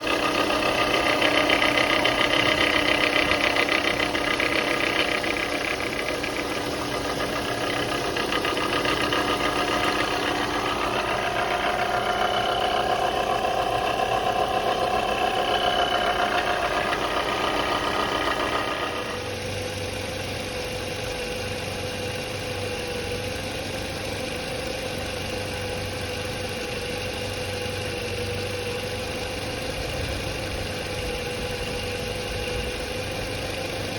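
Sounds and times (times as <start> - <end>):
alternator hum: 0.0 - 19.8
alternator whine: 0.0 - 22.2.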